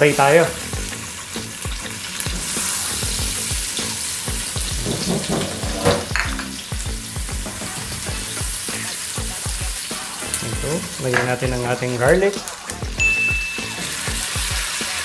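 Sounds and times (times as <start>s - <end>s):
onion sizzling in a pan: 0.0s - 15.0s.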